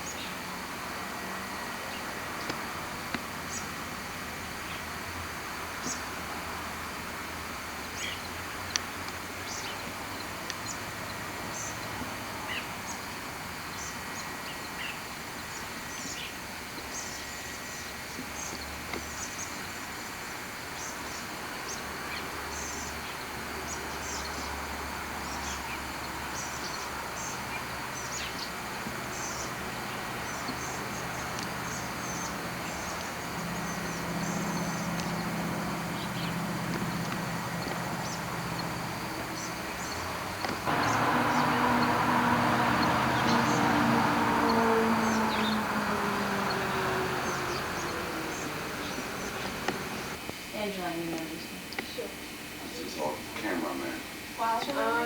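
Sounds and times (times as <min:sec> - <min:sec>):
low hum rising in pitch: 0:31.6 - 0:50.2.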